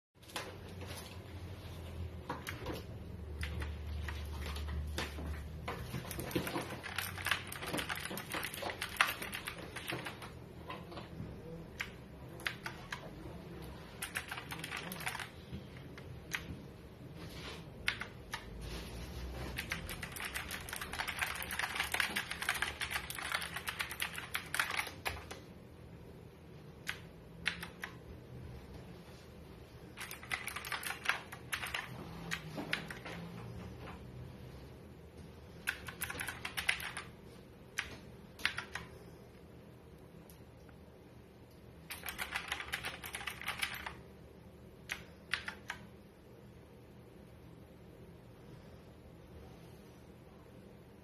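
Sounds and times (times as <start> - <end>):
mechanical keyboard typing: 2.3 - 16.5, 17.8 - 18.6, 19.4 - 25.5, 26.7 - 28.1, 29.9 - 33.3, 35.6 - 39.0, 41.8 - 44.0, 44.8 - 45.9.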